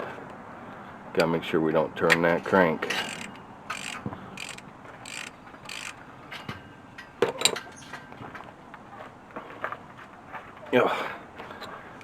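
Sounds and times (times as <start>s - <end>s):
ratchet wrench ratcheting: 2.9s - 6.0s
sharp metallic clatter: 2.9s - 8.2s.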